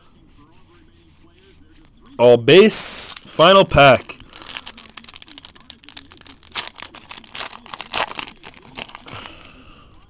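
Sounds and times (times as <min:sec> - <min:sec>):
wrapper crinkling and tearing: 0:03.0 - 0:09.6.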